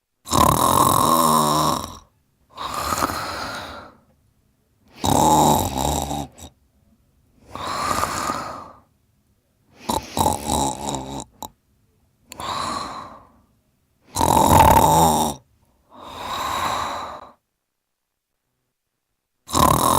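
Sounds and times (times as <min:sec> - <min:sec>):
loud rattling snores: 0:00.3 - 0:03.9, 0:05.0 - 0:06.6, 0:07.5 - 0:08.8, 0:09.8 - 0:11.5, 0:14.1 - 0:15.4, 0:19.5 - 0:19.9
soft breathy breath: 0:02.5 - 0:04.1, 0:07.4 - 0:08.9, 0:12.3 - 0:14.8, 0:15.6 - 0:17.4.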